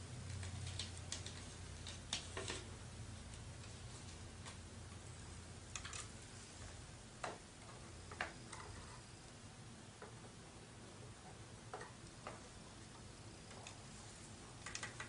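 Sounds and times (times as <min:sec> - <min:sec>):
steady low hum: 0:00.0 - 0:15.0
clicks and taps of computer parts: 0:14.6 - 0:15.0.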